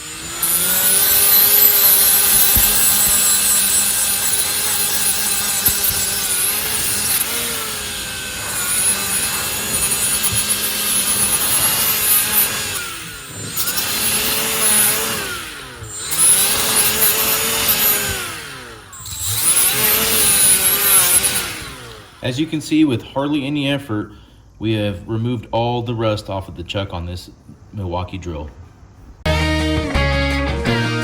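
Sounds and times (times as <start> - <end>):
die grinder brushing rust off steel: 0.0 - 22.6.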